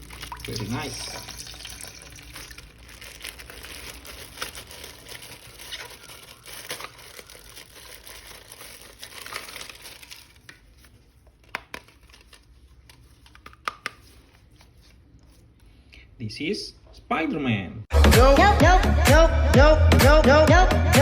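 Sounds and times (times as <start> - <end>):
packaging crinkling and rustling: 0.0 - 15.5.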